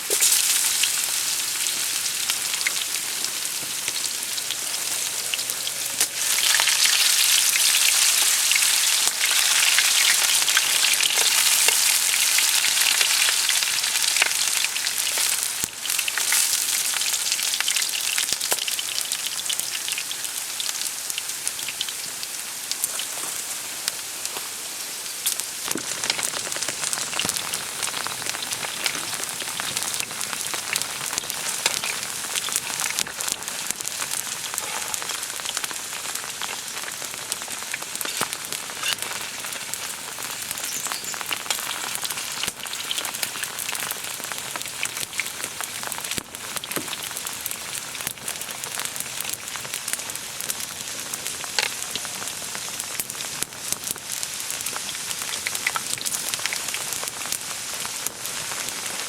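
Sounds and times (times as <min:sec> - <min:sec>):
steady rain falling: 0:16.6 - 0:59.0
raindrops striking a surface: 0:25.3 - 0:58.9.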